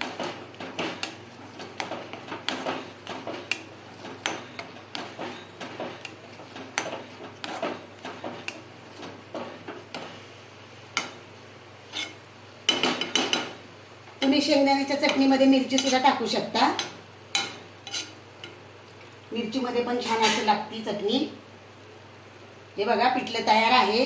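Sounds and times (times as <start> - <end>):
metal spoon scraping a pan: 0.0 - 9.6, 11.8 - 13.5, 14.8 - 18.6, 20.0 - 20.6.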